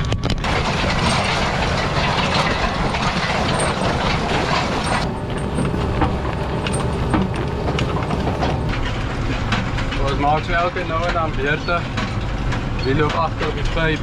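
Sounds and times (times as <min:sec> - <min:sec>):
clattering rattle of pipe rig: 0:00.4 - 0:10.2
tractor engine running: 0:00.4 - 0:13.9.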